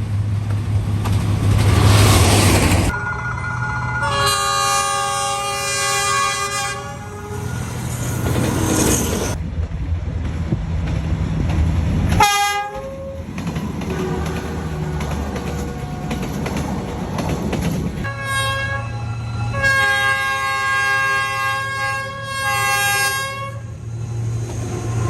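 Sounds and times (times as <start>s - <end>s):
locomotive rumble: 0.0s - 25.0s
locomotive horn: 4.0s - 8.6s, 12.2s - 13.3s, 13.9s - 16.6s, 18.0s - 23.8s.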